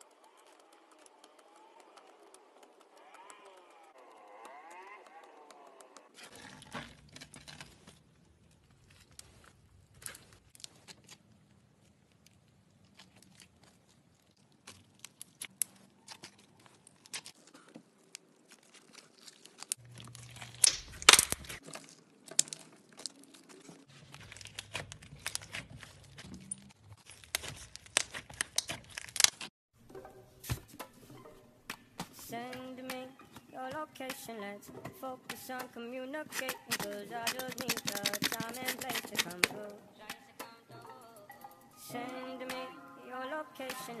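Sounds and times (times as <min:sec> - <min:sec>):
slime squeezed crackling and popping: 0:12.1 - 0:17.4, 0:18.2 - 0:29.5.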